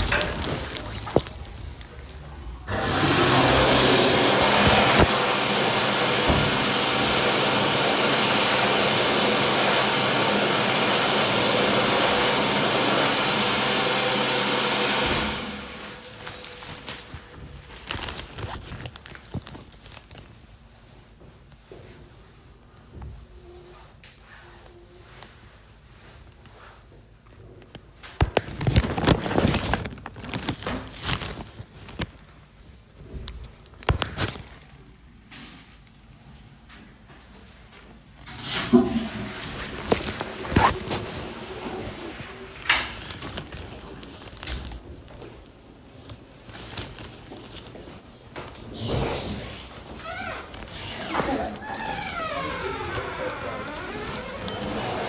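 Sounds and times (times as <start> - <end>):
electric hand dryer blowing: 2.7 - 16.2, 38.8 - 42.8, 50.0 - 55.0
rustling: 49.4 - 55.0.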